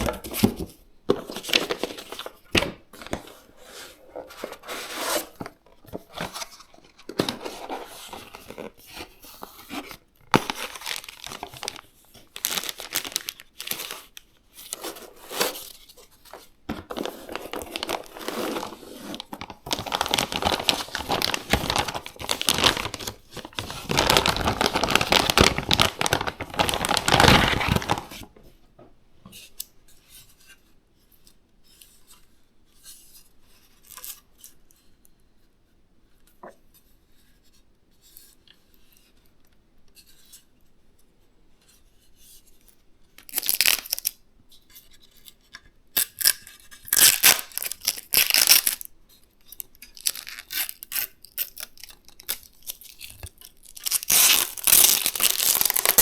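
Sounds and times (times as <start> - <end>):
packaging crinkling and tearing: 4.4 - 15.8, 16.7 - 28.3, 43.2 - 44.2, 46.0 - 48.9, 49.5 - 56.0.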